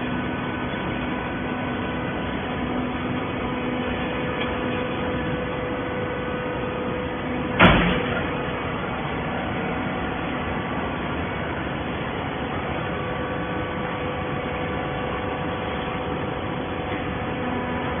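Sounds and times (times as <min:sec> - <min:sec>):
loud bang: 0:07.6 - 0:08.2.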